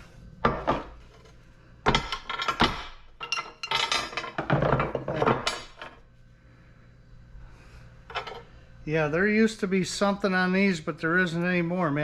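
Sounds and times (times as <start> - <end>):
metal parts clattering: 1.9 - 6.0.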